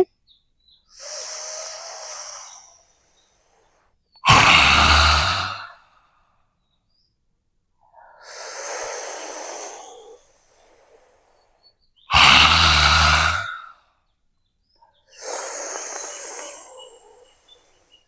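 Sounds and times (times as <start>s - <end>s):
breathy inhale: 0.9s - 6.4s, 7.8s - 13.8s, 14.9s - 18.0s
forceful haa exhale: 1.0s - 5.9s, 7.9s - 13.7s, 15.1s - 18.0s.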